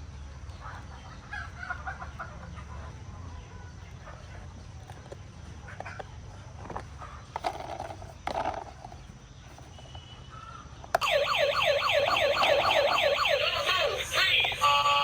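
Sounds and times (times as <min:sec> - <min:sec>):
electronic siren yelping: 0:11.0 - 0:15.0.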